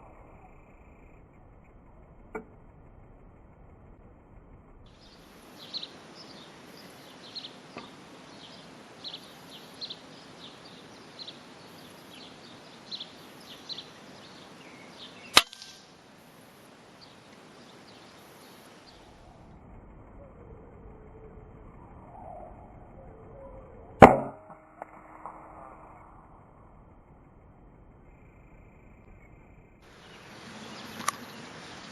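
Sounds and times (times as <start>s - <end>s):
small birds chirping: 4.9s - 23.9s, 28.1s - 31.9s
rifle shot: 15.3s - 15.9s.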